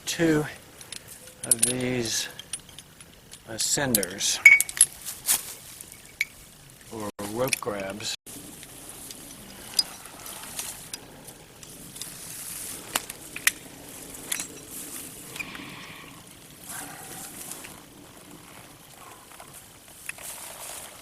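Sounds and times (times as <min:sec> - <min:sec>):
rustling of rope and clothing: 0:00.4 - 0:21.0
metal clicks of rope grabs: 0:00.8 - 0:06.4, 0:12.8 - 0:14.7.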